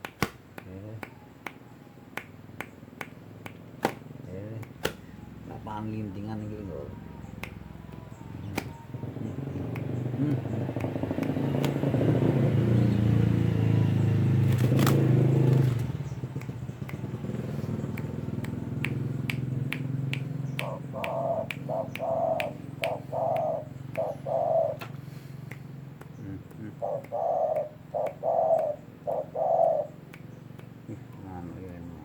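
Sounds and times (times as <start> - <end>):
passing motor vehicle hum: 0.7 - 32.0
dove cooing: 20.6 - 25.0, 26.2 - 30.0.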